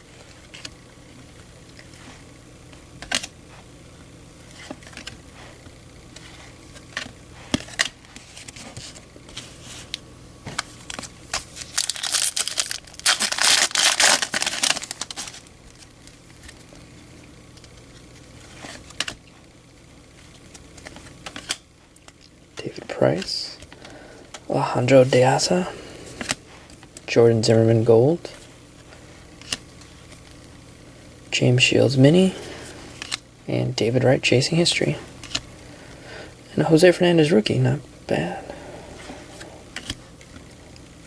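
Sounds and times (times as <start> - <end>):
foil wrapper tearing and crinkling: 10.8 - 16.8.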